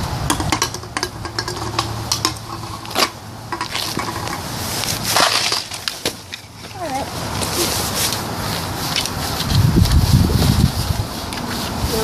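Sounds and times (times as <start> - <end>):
objects clicking and clinking: 0.3 - 4.4
rustling: 0.5 - 12.0.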